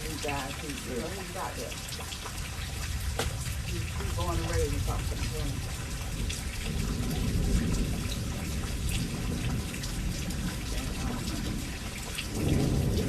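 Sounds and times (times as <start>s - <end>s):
rain falling and splashing: 0.0s - 13.0s
water drips: 0.0s - 13.0s.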